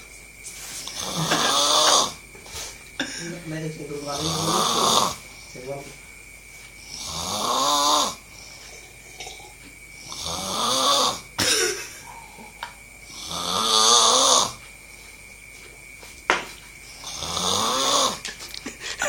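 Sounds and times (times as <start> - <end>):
person snoring: 0.8 - 2.2, 4.1 - 5.2, 6.8 - 11.3, 12.0 - 14.6, 16.9 - 18.3.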